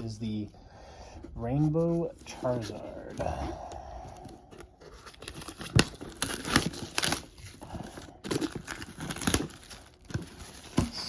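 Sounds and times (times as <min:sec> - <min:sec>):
packaging crinkling and tearing: 0:04.4 - 0:11.0.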